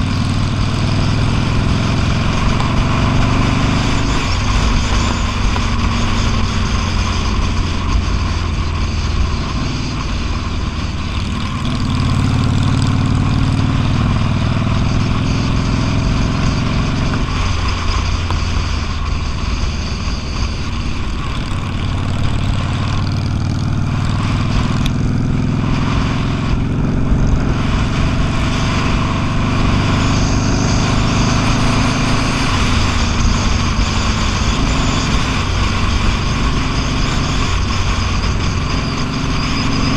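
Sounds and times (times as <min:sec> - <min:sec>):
motorcycle engine running: 0:00.0 - 0:39.9
rush of road noise: 0:00.0 - 0:39.9.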